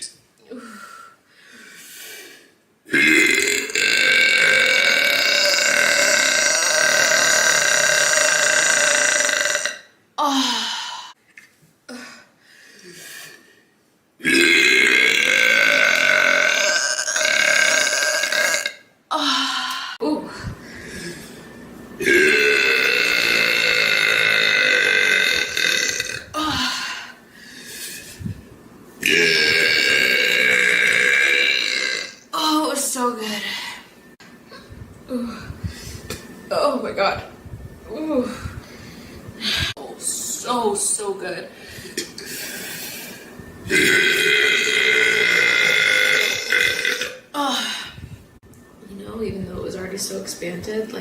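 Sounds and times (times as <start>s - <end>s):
woman burping: 2.9s - 10.8s, 14.2s - 19.5s, 22.0s - 27.1s, 29.0s - 32.2s, 43.7s - 48.0s.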